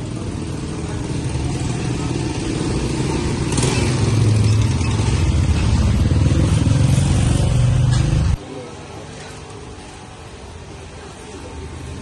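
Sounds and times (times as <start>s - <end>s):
vehicle engine approaching: 0.0s - 8.4s.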